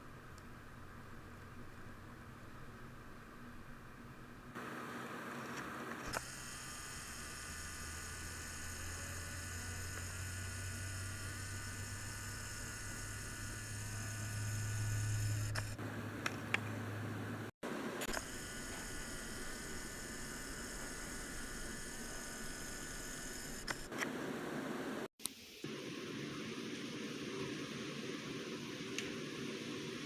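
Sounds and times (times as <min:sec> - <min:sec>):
electrical hum and buzz: 0:00.0 - 0:25.1
sharp clicks: 0:18.0 - 0:24.1.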